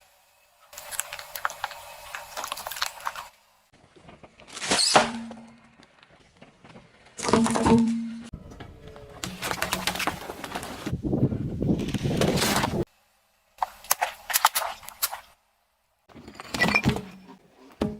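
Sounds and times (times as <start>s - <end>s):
objects cracking and crunching: 0.8s - 3.3s.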